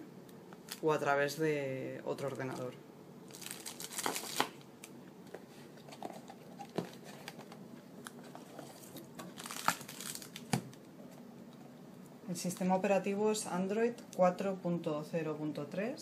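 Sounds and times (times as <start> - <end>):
crinkling rustles: 2.2 - 11.3.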